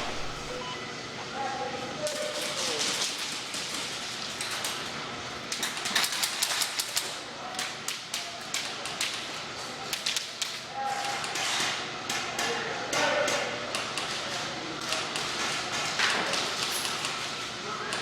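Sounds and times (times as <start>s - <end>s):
airsoft guns firing: 0.0s - 0.6s
players talking and shouting: 0.0s - 0.6s.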